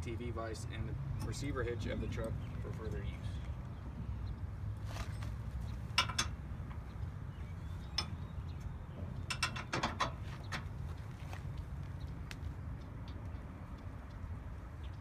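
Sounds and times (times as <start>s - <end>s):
steady low rumble: 0.0s - 15.0s
metal clicks and clanks: 5.9s - 6.9s, 9.0s - 10.8s.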